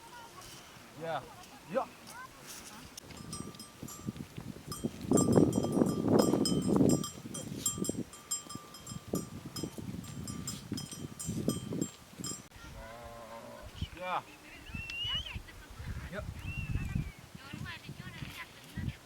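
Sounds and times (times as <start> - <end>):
livestock bells jingling: 1.4 - 12.5.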